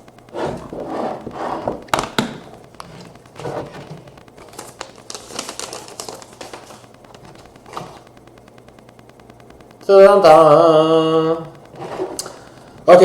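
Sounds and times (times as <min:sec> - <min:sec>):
plastic crinkling: 0:01.8 - 0:08.2
plastic case clicks: 0:01.9 - 0:02.5.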